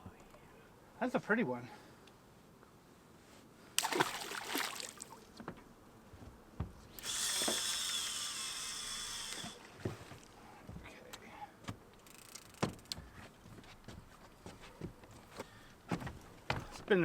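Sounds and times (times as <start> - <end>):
fishing reel whirring: 7.0 - 9.6, 12.0 - 13.0.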